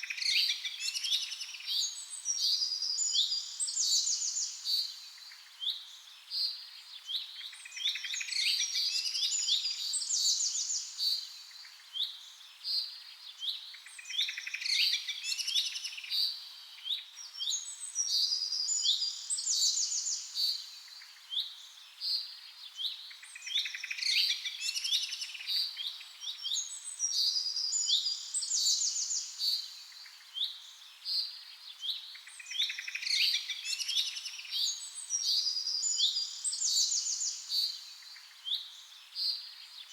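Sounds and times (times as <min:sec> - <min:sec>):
small birds chirping and trilling: 0:00.0 - 0:39.9.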